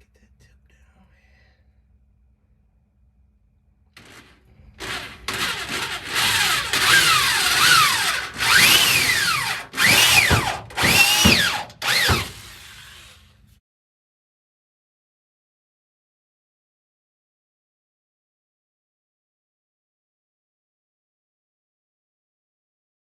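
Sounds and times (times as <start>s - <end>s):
power drill motor whine: 4.8s - 13.4s.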